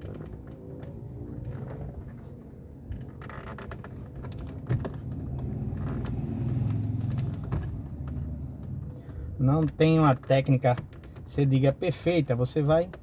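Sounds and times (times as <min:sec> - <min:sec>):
plastic clicks and scrapes: 0:00.0 - 0:02.3.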